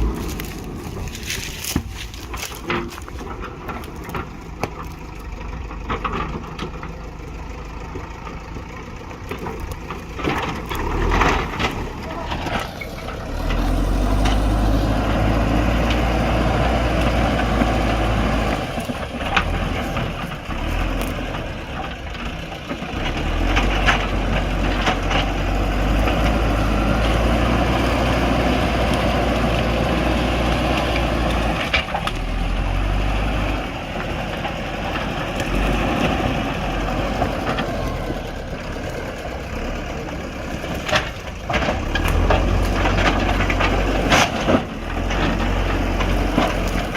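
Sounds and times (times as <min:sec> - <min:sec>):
sharp cracks and knocks: 0:00.0 - 0:07.0, 0:09.2 - 0:15.0, 0:16.9 - 0:32.4, 0:40.6 - 0:46.9
diesel engine droning under load: 0:00.0 - 0:46.9.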